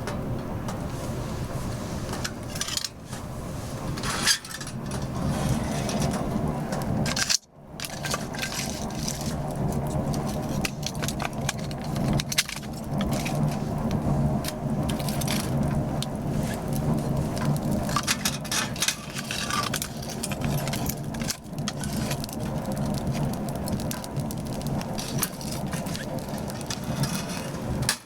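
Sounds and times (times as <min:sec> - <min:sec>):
fire crackling and popping: 0:00.2 - 0:28.0.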